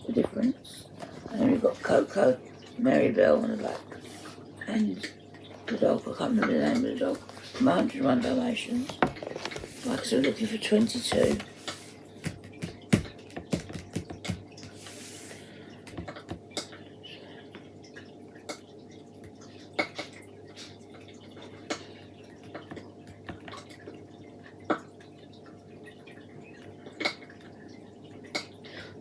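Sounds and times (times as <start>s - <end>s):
taps and clicks on cardboard: 12.2s - 14.8s.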